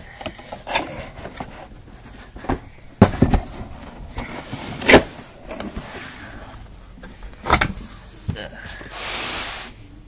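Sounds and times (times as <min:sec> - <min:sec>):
cardboard scraping and rustling: 0:00.4 - 0:06.7.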